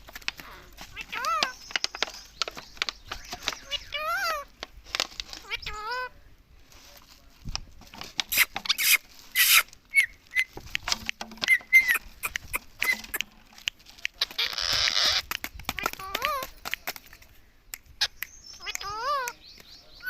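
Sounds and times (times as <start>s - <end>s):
parakeet clicks and chirps: 0.3s - 4.5s, 8.3s - 19.8s.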